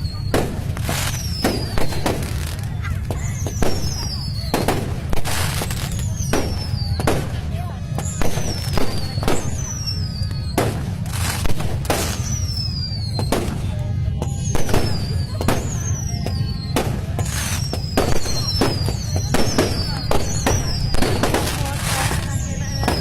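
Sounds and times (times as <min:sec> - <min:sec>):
falling firework whistles: 0:00.0 - 0:23.0
fireworks bangs: 0:00.0 - 0:23.0.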